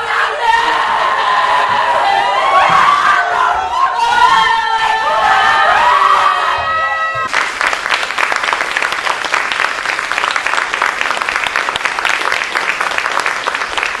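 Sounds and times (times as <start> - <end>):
audience applauding: 7.2 - 14.0.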